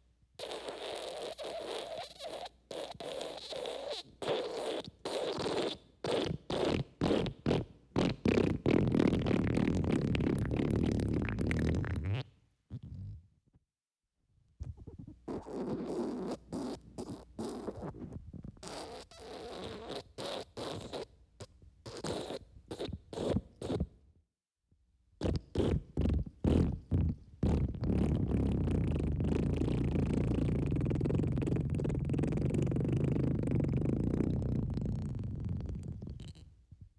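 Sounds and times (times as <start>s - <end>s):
wet fart sound effect: 0.4s - 13.2s, 25.2s - 36.5s.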